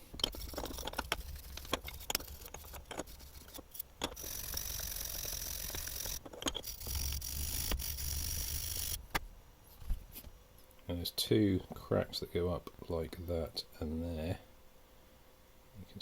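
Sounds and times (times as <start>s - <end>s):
wire brush scrubbing metal: 0.0s - 8.7s.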